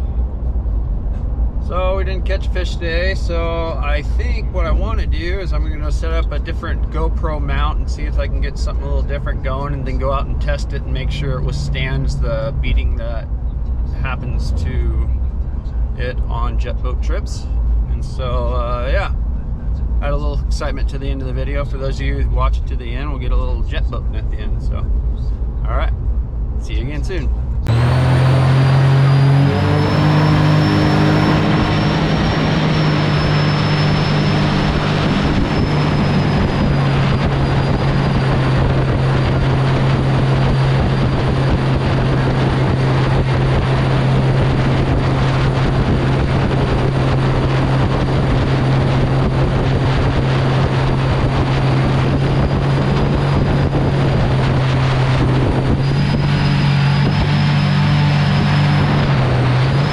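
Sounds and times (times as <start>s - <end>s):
engine droning: 0.0s - 59.9s
wind rush: 24.6s - 59.9s.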